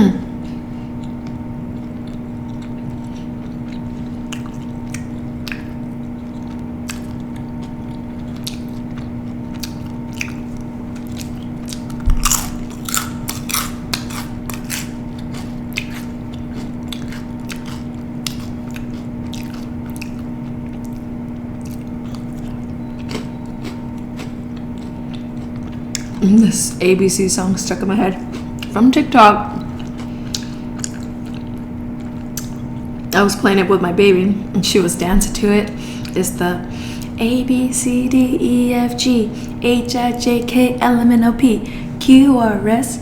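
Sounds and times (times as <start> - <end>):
steady low hum: 0.0 - 43.0
person chewing with crunches: 0.3 - 26.3, 28.1 - 33.2, 35.7 - 37.2.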